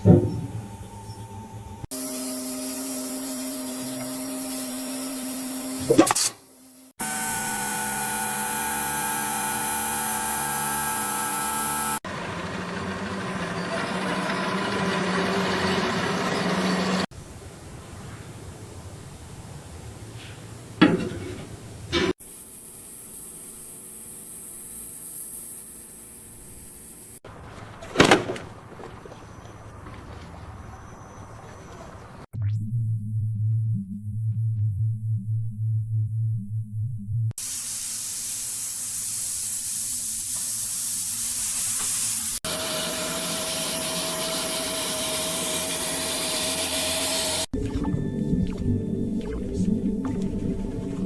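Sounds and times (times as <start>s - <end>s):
spraying hiss: 37.4s - 42.4s.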